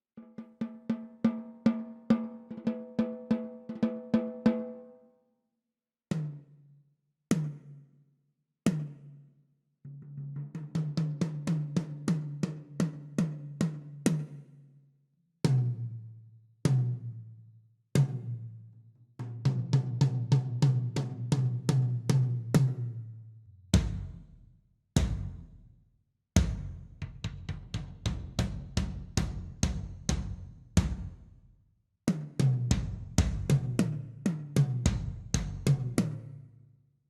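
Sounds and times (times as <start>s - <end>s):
tom drums struck: 25.0s - 25.5s, 26.4s - 31.2s.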